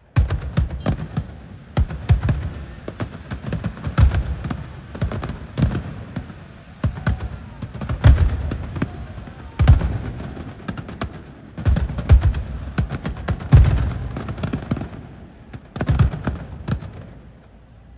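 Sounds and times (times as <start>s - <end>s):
fireworks cracks and crackles: 0.0s - 17.9s
fireworks deep booms: 0.0s - 17.9s.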